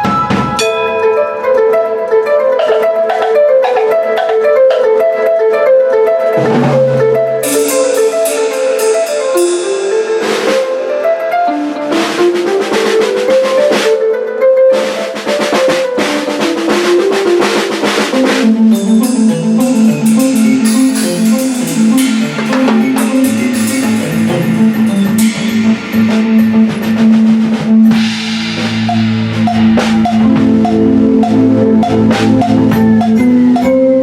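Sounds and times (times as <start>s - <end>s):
pitched melodic part: 0.6s - 34.0s
drum kit playing: 6.3s - 14.1s, 14.7s - 34.0s
cymbal wash: 6.4s - 13.7s, 17.7s - 33.2s.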